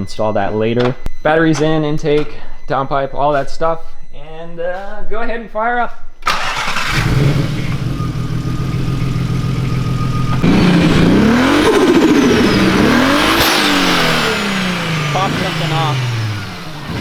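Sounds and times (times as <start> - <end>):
car engine idling and revving: 6.3 - 17.0.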